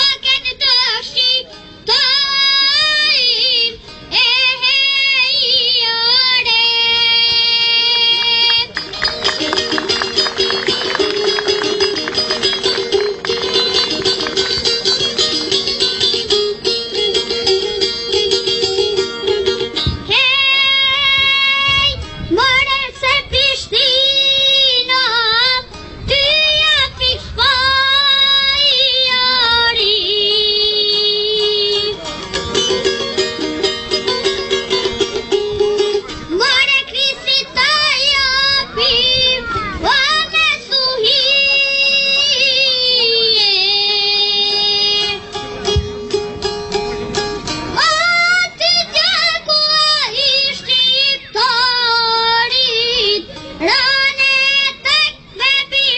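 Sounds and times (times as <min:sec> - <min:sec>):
boy singing: 0:00.0 - 0:08.8, 0:20.0 - 0:32.1, 0:35.9 - 0:45.2, 0:47.7 - 0:55.9
instrumental accompaniment: 0:00.0 - 0:55.9.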